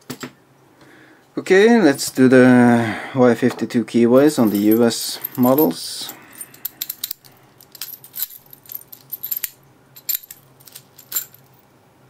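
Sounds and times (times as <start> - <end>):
metallic clicks and jingles: 4.2 - 11.7.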